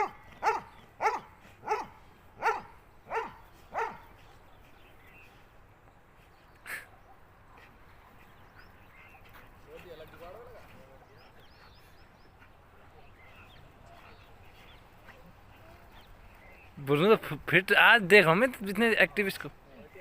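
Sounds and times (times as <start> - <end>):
dog barking: 0.0 - 4.1.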